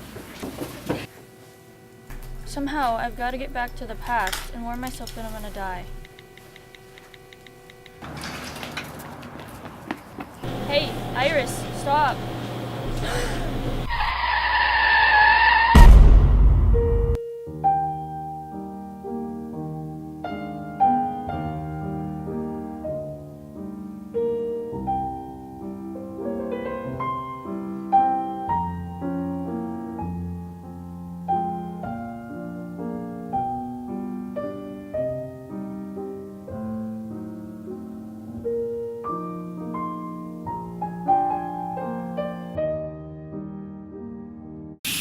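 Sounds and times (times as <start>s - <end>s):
slow gentle solo piano: 17.4s - 44.8s.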